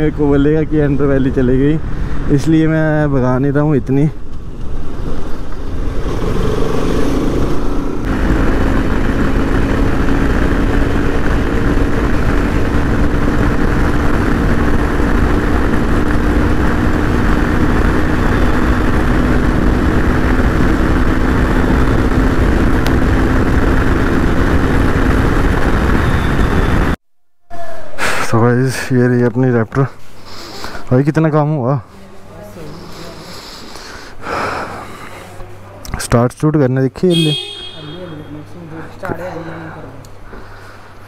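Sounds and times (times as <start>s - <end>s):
motorcycle engine droning: 5.4s - 27.0s, 37.1s - 38.6s
wind rush on microphone: 5.6s - 27.0s.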